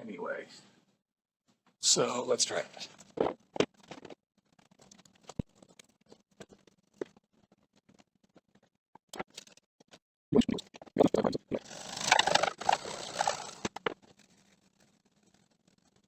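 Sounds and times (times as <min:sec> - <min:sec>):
scraping and rasping plastic: 0:11.6 - 0:16.0.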